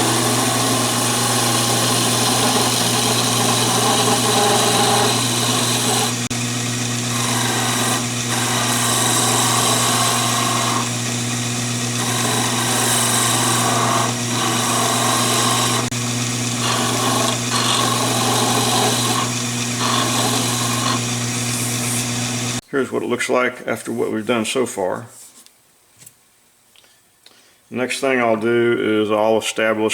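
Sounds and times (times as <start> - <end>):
tool cutting spinning wood: 0.0 - 22.6
wood lathe motor hum: 0.0 - 22.6.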